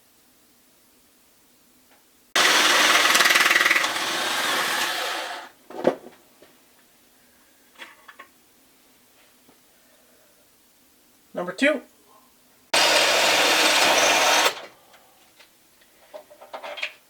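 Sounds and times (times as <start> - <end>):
power drill drilling: 2.4 - 5.5, 12.8 - 14.7.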